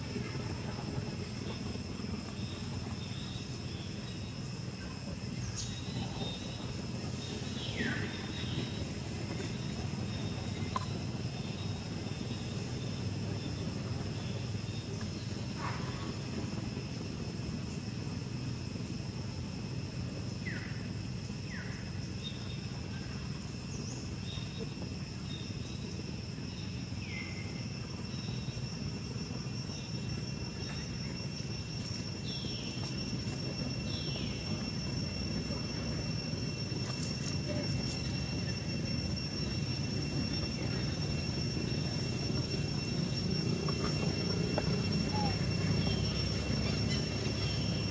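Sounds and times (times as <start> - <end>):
outdoor rumble: 21.6 - 47.9
high insect-like tones: 25.0 - 47.9.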